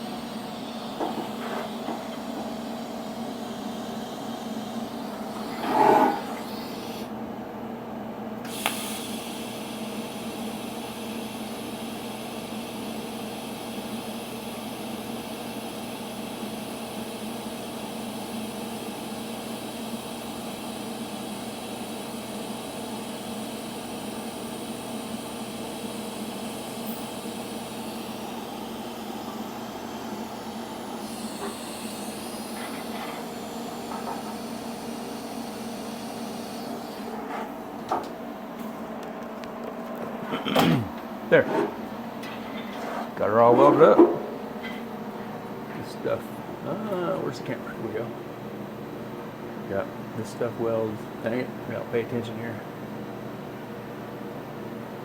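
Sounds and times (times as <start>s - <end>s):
click: 8.4s - 8.8s
welding arc hissing: 8.5s - 37.3s.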